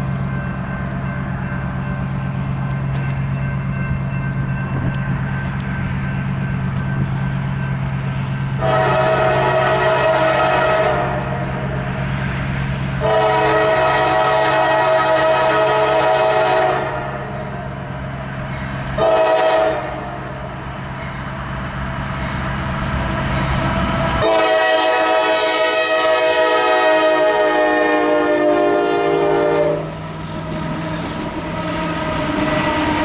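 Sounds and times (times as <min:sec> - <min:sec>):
locomotive air horn blasts: 0:08.6 - 0:11.8, 0:13.0 - 0:17.6, 0:19.0 - 0:20.3, 0:24.1 - 0:30.0, 0:30.9 - 0:33.0.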